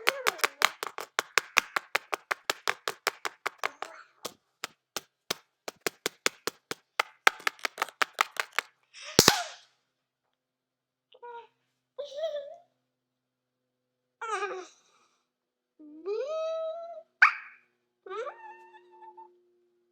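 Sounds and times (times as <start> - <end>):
fast sharp taps: 0.0 - 9.5
double crack: 5.7 - 9.6.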